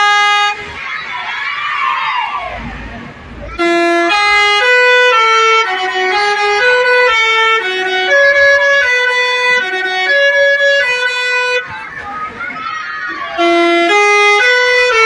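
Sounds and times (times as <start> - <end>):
horn playing a tune: 0.0 - 0.7, 3.6 - 11.7, 13.3 - 15.0.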